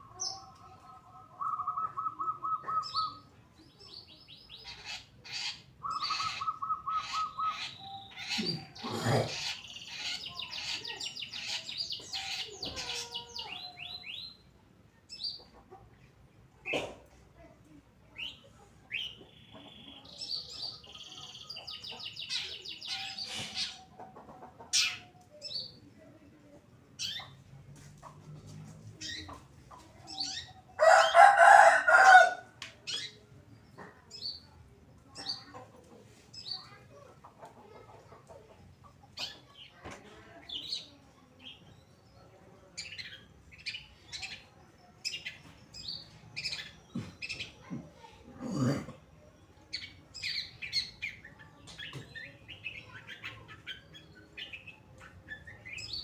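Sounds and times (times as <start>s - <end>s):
bird chirping and chattering: 0.0s - 14.5s, 18.1s - 25.8s, 27.0s - 27.5s, 28.9s - 30.8s, 32.8s - 35.7s, 36.3s - 39.8s, 42.8s - 48.2s, 48.9s - 56.0s.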